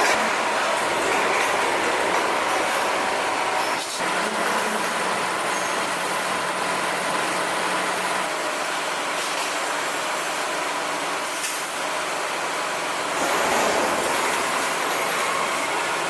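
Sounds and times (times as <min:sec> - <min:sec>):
heavy industrial machinery: 0:00.0 - 0:16.0.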